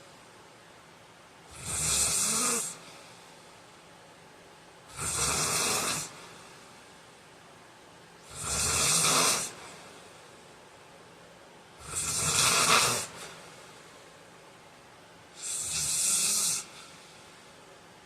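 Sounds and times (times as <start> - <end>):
man snoring: 1.5 - 2.8, 4.9 - 6.2, 8.3 - 9.6, 11.8 - 13.3, 15.4 - 16.7.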